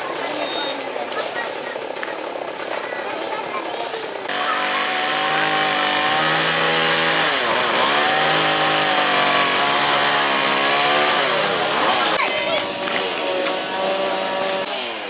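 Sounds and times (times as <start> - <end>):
small engine running at high revs: 4.3 - 15.0.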